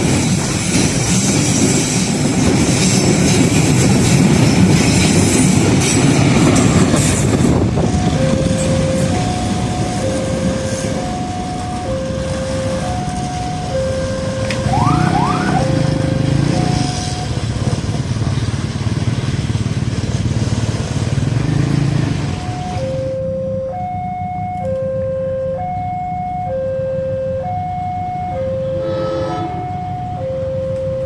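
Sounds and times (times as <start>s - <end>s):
passing train rumble: 0.0s - 31.0s
two-tone crossing alarm: 6.1s - 17.6s, 22.1s - 31.0s.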